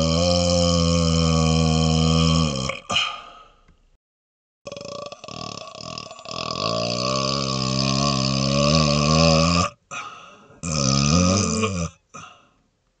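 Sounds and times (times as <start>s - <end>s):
man belching: 0.0s - 3.2s, 4.7s - 9.9s, 10.6s - 12.3s.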